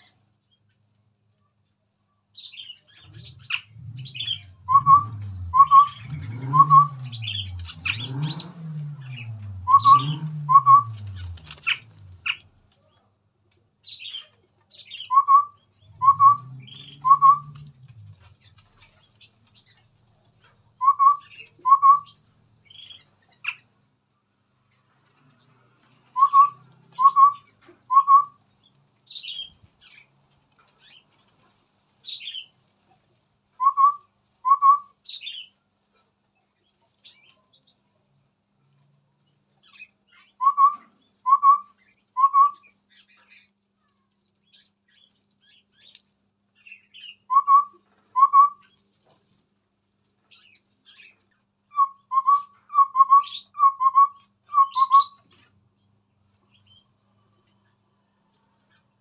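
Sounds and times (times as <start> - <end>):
bird chirps: 0.0 - 36.0, 36.6 - 59.0
bird calling clear notes: 2.6 - 12.6, 13.8 - 18.8, 26.1 - 30.0, 46.6 - 48.9, 50.3 - 55.4.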